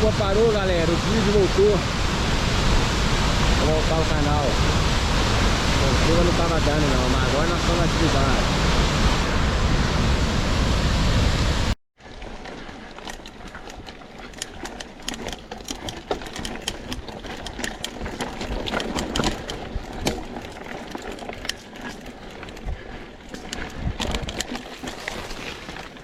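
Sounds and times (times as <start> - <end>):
low wind rumble: 0.0 - 11.8
bike clattering over rough trail: 12.0 - 26.0.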